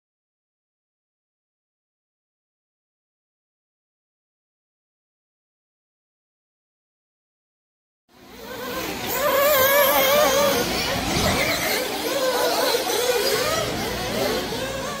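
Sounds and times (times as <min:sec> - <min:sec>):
small engines revving high: 0:08.2 - 0:15.0.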